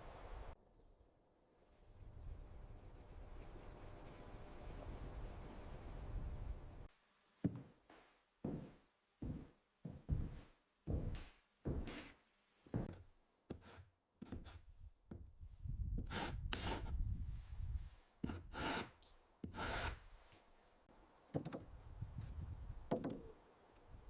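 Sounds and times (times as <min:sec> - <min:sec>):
rubbing and scraping on wood: 0:12.8 - 0:15.2, 0:16.0 - 0:17.0, 0:17.9 - 0:20.5
wooden knocks: 0:21.4 - 0:21.7, 0:22.9 - 0:23.3.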